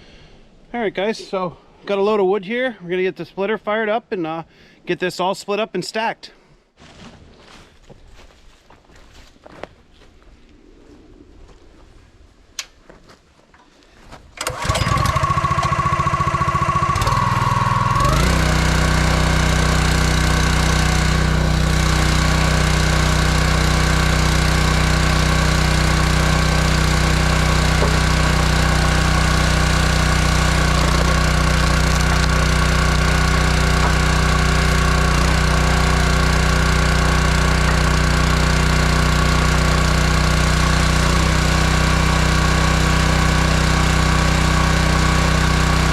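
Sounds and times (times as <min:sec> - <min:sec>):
small engine starting and running: 0:14.4 - 0:45.9.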